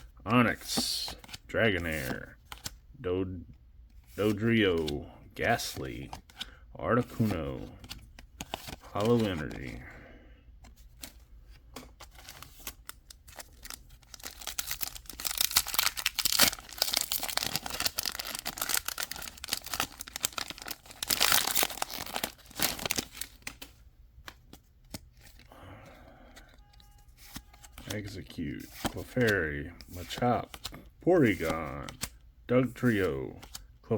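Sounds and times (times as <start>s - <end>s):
foil wrapper crinkling and tearing: 13.3s - 23.5s.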